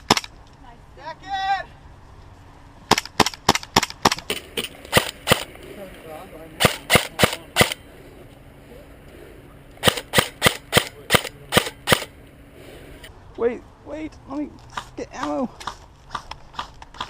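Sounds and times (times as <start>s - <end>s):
airsoft rifle single shots: 2.9s - 5.5s, 6.6s - 7.8s, 9.8s - 12.1s.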